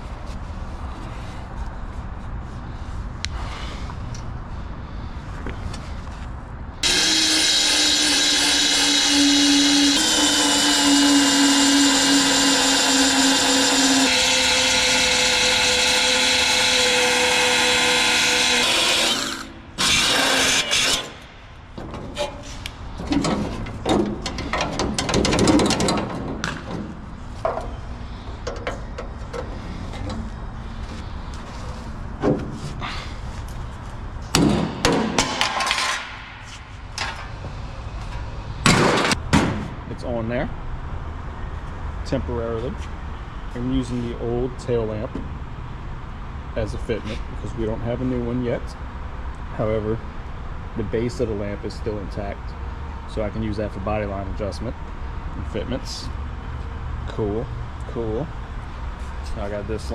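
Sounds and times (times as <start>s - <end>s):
power drill running: 6.8s - 21.2s.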